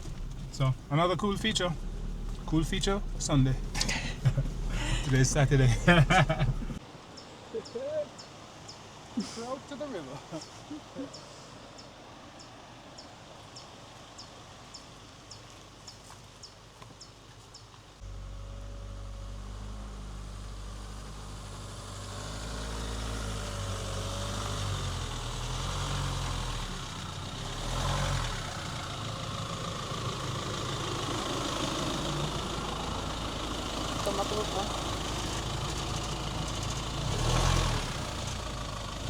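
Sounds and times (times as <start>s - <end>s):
pickup truck engine running: 0.0s - 6.8s, 18.0s - 39.0s.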